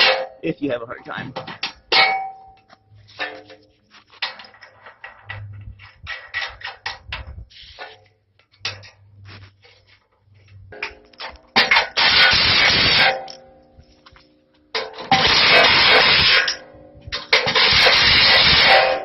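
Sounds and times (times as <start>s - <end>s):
metal parts clanking: 1.1s - 9.0s, 10.7s - 13.6s, 14.7s - 19.0s.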